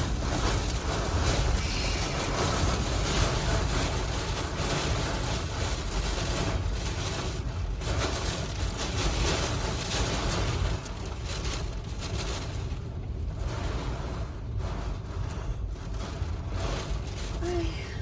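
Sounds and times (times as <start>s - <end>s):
strong wind gusts: 0.0s - 18.0s
wind buffeting microphone: 0.0s - 18.0s.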